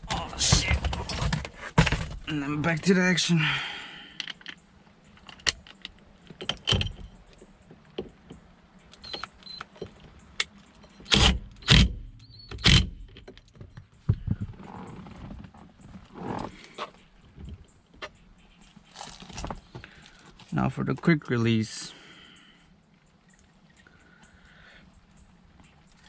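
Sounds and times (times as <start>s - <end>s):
tools and metal hardware clinking: 0.5s - 2.0s, 4.2s - 7.2s, 18.8s - 20.2s.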